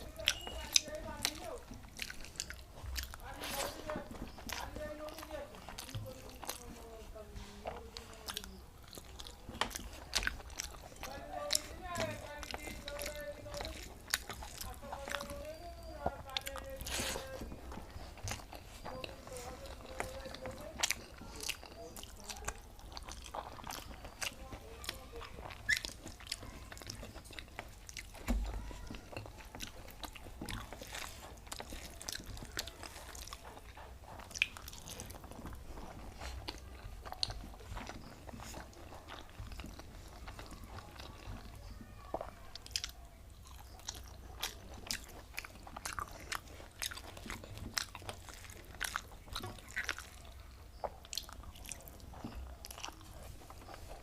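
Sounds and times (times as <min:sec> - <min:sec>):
person chewing food: 0:00.0 - 0:54.0
wet mouth clicks and smacks: 0:29.2 - 0:40.4, 0:42.6 - 0:54.0.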